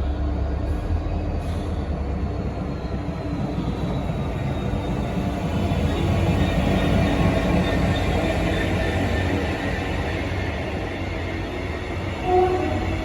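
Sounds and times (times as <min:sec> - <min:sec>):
diesel locomotive engine hum: 0:00.0 - 0:13.0
train rumbling on rails: 0:00.0 - 0:13.0.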